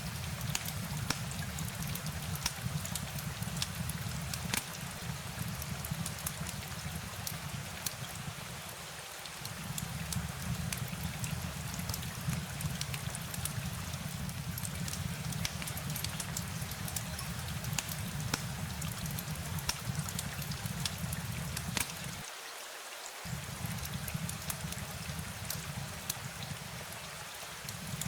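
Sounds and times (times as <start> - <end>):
rain drops ticking: 0.0 - 22.3, 23.2 - 28.0
constant low rumble: 23.3 - 27.0.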